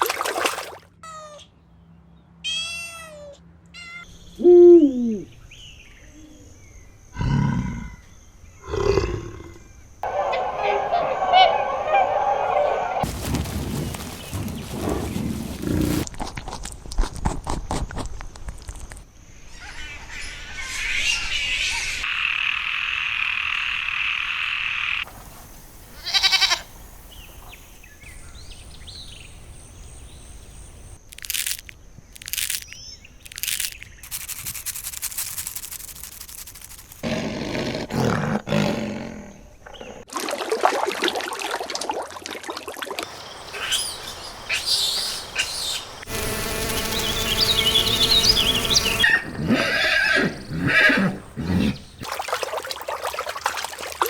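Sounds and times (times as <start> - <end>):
outdoor ambience: 0.0 - 40.1, 43.0 - 54.0
wild animal calls: 49.0 - 52.1.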